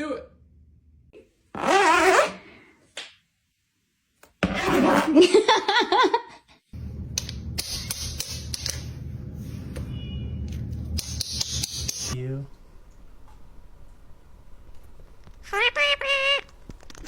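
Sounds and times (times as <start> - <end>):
steady low hum: 6.8 - 15.2.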